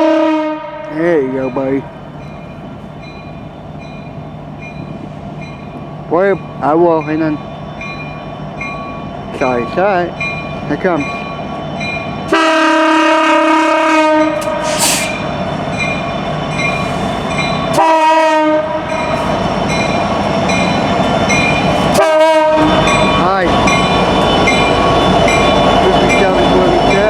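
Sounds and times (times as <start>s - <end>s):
locomotive air horn blasts: 0.0s - 0.9s, 12.3s - 15.2s, 17.8s - 19.0s, 21.9s - 22.8s
low rumble of passing train: 0.0s - 27.0s
crossing bell ringing: 1.0s - 12.4s, 15.2s - 18.0s, 18.6s - 27.0s.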